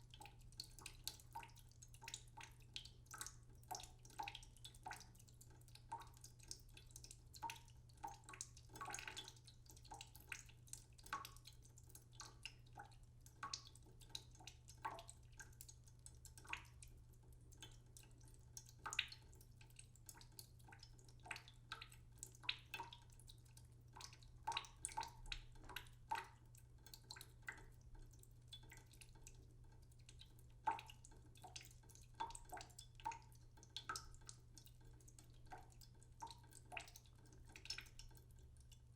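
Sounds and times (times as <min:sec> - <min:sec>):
water dripping into a pot: 0:00.0 - 0:38.9.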